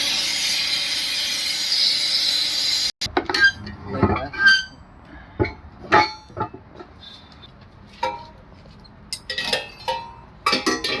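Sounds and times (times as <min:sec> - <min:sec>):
metal clanging on metal: 0:03.0 - 0:07.2, 0:08.0 - 0:08.4, 0:09.1 - 0:11.0.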